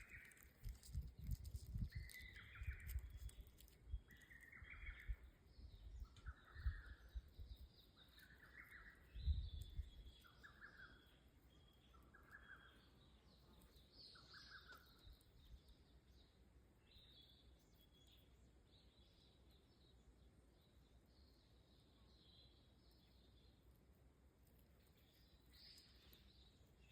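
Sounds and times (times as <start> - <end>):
high bird chirps: 1.8 - 15.8.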